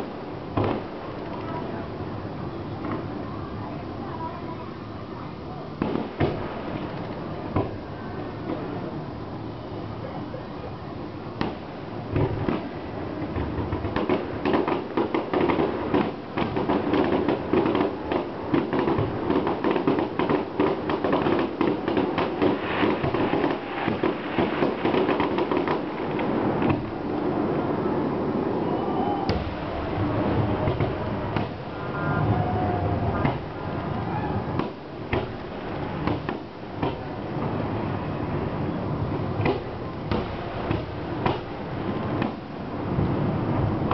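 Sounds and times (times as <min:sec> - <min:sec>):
fireworks bangs and crackles: 0:00.0 - 0:43.9.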